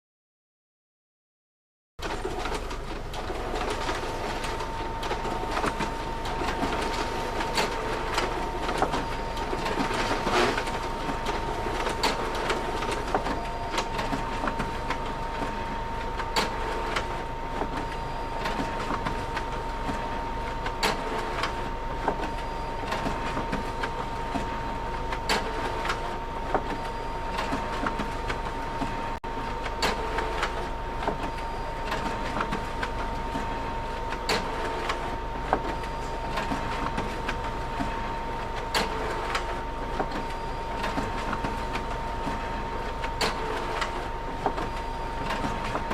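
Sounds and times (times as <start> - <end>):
photocopier clicks and ticks: 2.0 - 15.5, 16.1 - 24.5
photocopier humming with whine: 2.0 - 45.9.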